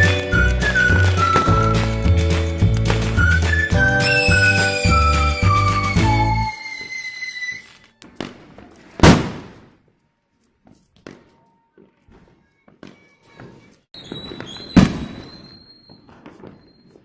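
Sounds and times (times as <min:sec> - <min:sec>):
firecracker bangs echoing: 0:06.6 - 0:09.8, 0:14.0 - 0:17.0
small firecracker pops and crackles: 0:06.8 - 0:09.9, 0:14.0 - 0:17.0.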